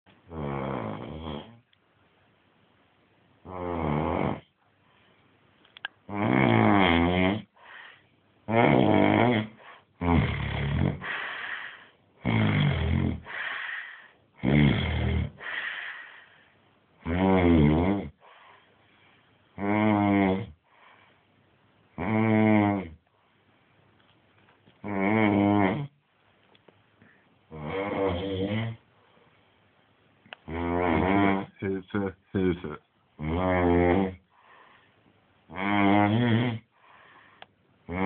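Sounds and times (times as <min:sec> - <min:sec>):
heavy snoring: 0:00.3 - 0:01.6, 0:03.5 - 0:04.5, 0:06.1 - 0:07.6, 0:08.5 - 0:16.2, 0:17.0 - 0:18.3, 0:19.6 - 0:20.6, 0:22.0 - 0:23.0, 0:24.8 - 0:25.9, 0:27.5 - 0:28.8, 0:30.4 - 0:31.6, 0:33.2 - 0:34.3, 0:35.5 - 0:37.2.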